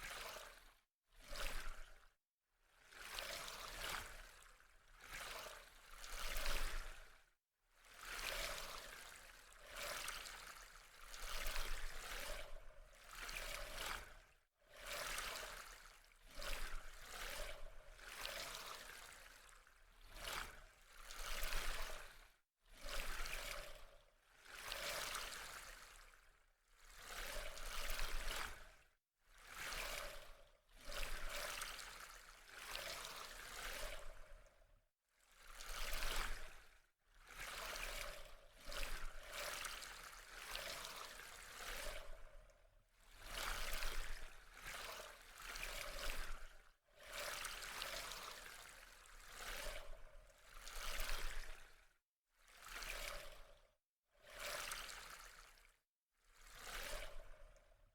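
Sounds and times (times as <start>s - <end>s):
water splashing and trickling: 39.2s - 42.4s.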